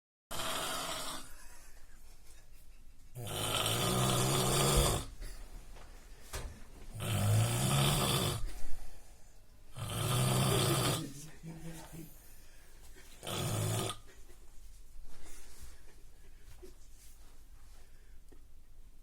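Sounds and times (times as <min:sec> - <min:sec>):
man snoring: 0:00.3 - 0:01.4, 0:03.2 - 0:05.2, 0:06.9 - 0:08.6, 0:09.7 - 0:11.2, 0:13.2 - 0:14.0
quiet breathing: 0:08.3 - 0:13.3, 0:13.9 - 0:18.6.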